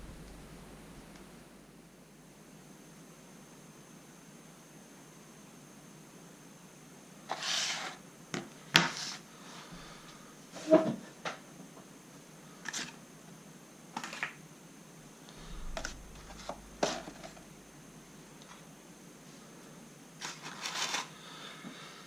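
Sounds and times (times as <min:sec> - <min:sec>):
rustling: 0:15.3 - 0:17.6.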